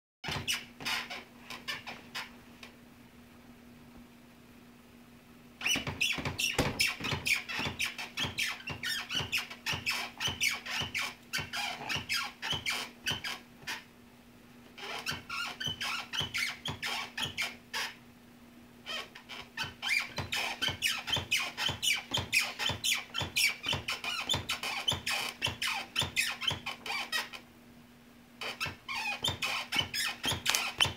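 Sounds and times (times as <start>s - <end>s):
desk chair squeaking: 0.2s - 2.4s, 5.6s - 13.9s, 14.8s - 18.0s, 18.8s - 27.4s, 28.4s - 30.9s.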